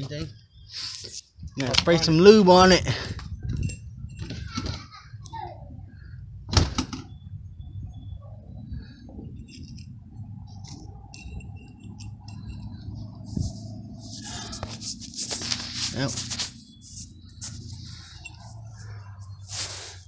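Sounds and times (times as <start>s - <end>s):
metal tools being handled: 10.5s - 19.8s.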